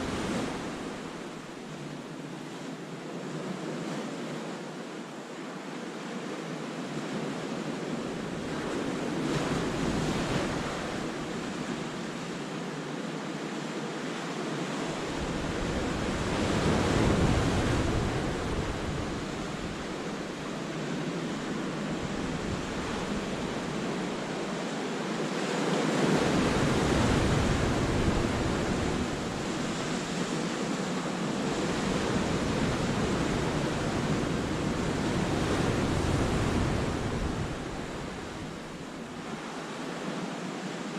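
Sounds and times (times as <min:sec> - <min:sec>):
wind rumble on microphone: 0:07.1 - 0:12.5, 0:14.6 - 0:24.7, 0:25.7 - 0:39.4.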